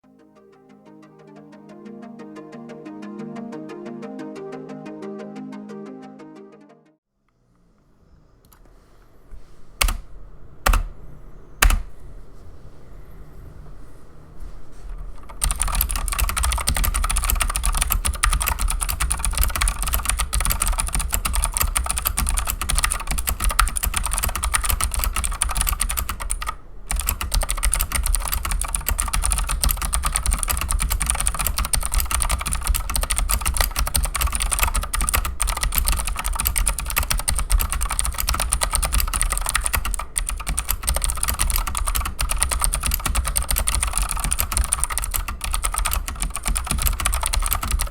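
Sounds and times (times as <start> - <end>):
mechanical keyboard typing: 9.8 - 10.0, 10.6 - 11.0, 15.2 - 47.9.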